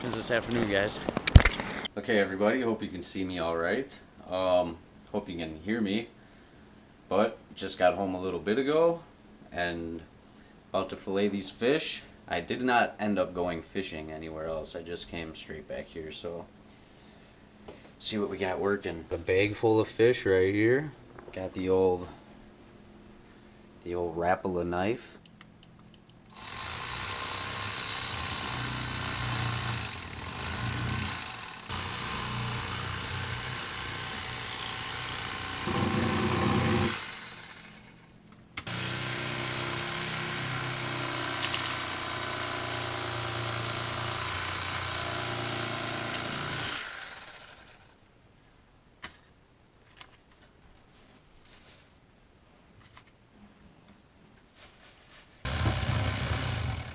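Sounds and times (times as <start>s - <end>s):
electric fillet knife running: 26.4s - 37.9s, 55.5s - 56.9s.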